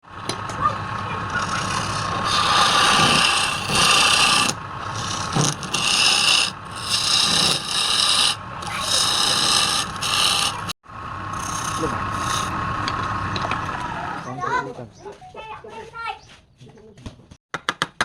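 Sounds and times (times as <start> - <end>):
turning tool scraping wood: 1.2 - 10.8, 11.4 - 12.6
wood lathe whining: 1.2 - 13.0.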